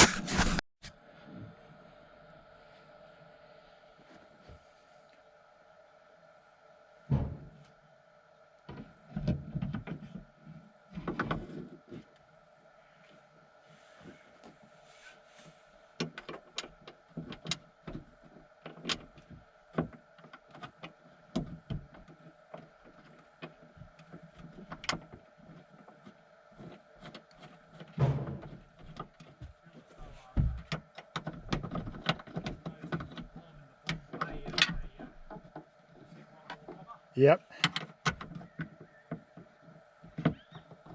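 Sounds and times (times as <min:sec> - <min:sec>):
heavy dull thumps: 0:07.1 - 0:07.6, 0:28.0 - 0:28.6.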